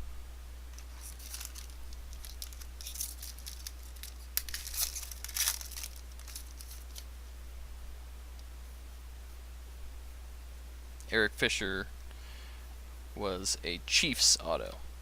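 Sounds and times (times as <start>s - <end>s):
low electrical hum: 0.0s - 15.0s
foil wrapper tearing and crinkling: 0.8s - 7.1s.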